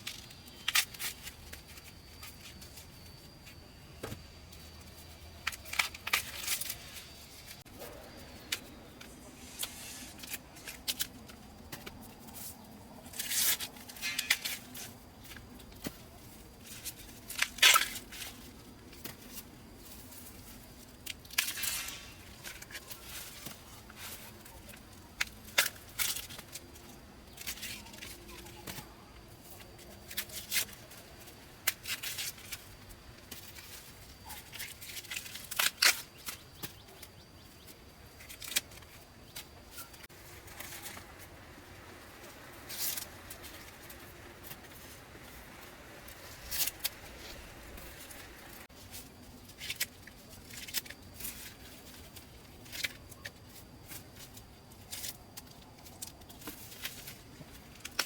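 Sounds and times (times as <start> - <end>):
crisp tearing and rustling: 4.9 - 58.0.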